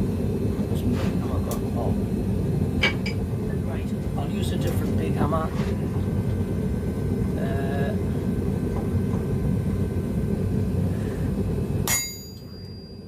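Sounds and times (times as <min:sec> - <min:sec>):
gas forge rushing: 0:00.0 - 0:12.9
ringing metal clang: 0:11.8 - 0:13.0.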